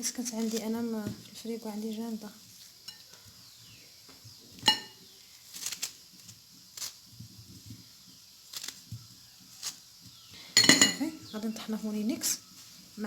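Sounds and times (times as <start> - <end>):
utensils clinking against a dish: 2.8 - 3.2, 4.6 - 5.0, 10.5 - 11.2.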